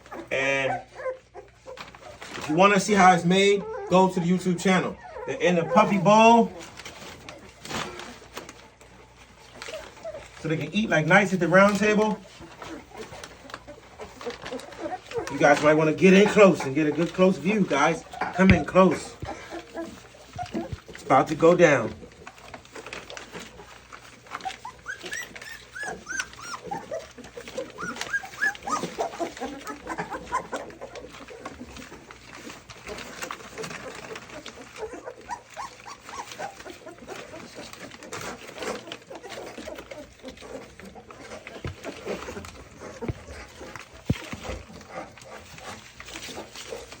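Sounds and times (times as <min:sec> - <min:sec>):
puppies squeaking and whimpering: 0:00.0 - 0:47.0.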